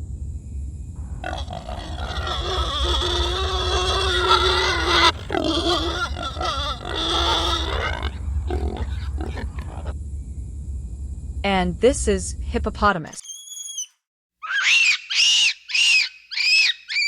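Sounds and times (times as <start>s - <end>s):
monkey screaming calls: 1.2s - 9.9s, 13.2s - 17.0s.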